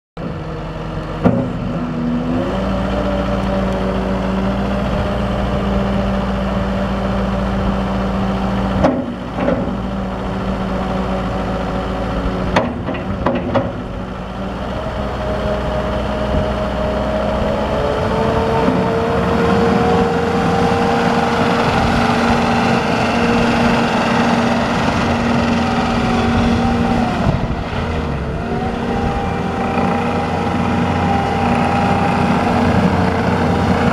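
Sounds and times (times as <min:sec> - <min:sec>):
diesel engine running: 0:00.2 - 0:33.9.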